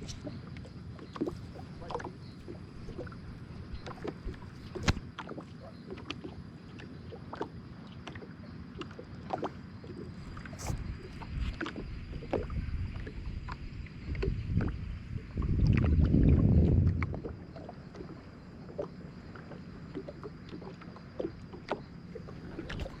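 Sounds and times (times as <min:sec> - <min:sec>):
wind buffeting microphone: 0:10.1 - 0:18.1.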